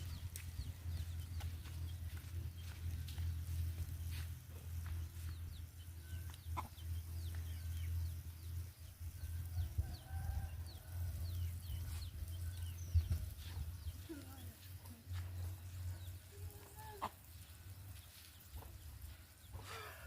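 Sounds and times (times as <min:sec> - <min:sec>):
steady low hum: 0:00.0 - 0:20.0
chickens clucking and peeping: 0:04.1 - 0:19.7.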